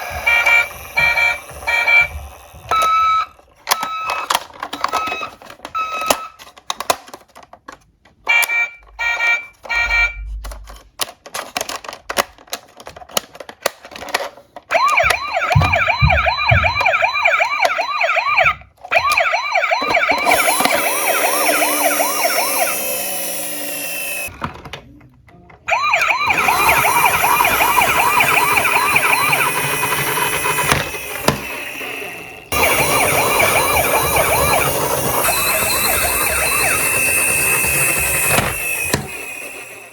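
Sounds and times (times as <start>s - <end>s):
toy siren yelping: 0.0s - 6.3s, 14.7s - 24.3s, 25.7s - 39.9s
clicks of toy cars handled: 3.6s - 8.5s, 10.4s - 15.2s.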